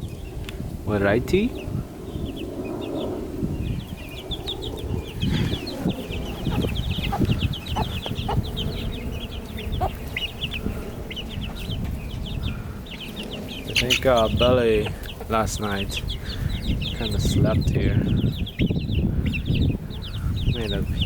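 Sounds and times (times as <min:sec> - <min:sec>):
chicks peeping: 0:00.0 - 0:21.0.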